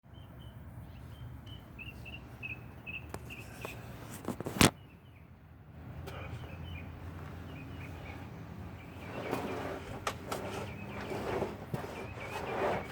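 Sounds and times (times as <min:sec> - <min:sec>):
high chirps: 0:00.1 - 0:03.8.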